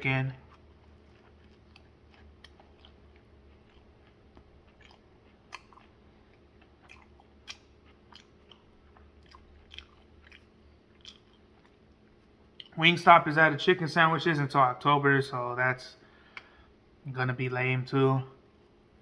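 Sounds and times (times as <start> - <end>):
soft crunches and mouth clicks: 0.3 - 12.8.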